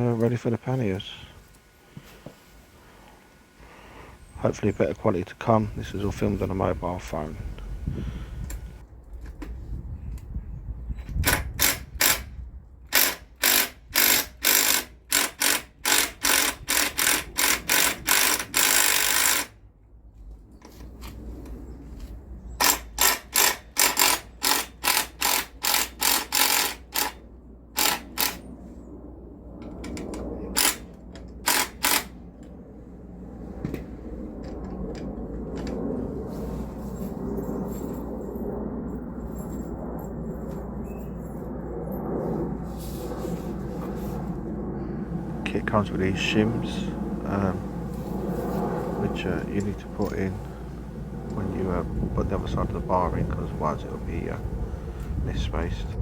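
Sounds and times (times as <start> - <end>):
hand tool rasping on bolts: 12.9 - 19.5, 22.6 - 27.2, 31.5 - 32.1.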